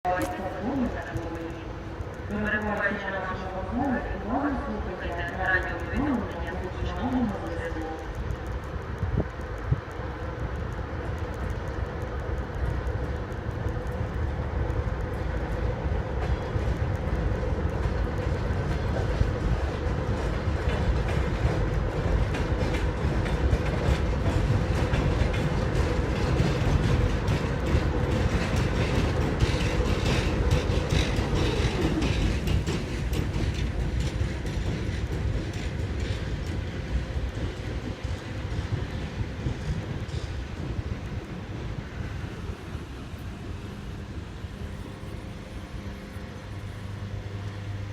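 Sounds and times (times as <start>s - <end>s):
steady train rumble: 0.0s - 47.9s
train wheels clattering over rail joints: 15.2s - 42.0s.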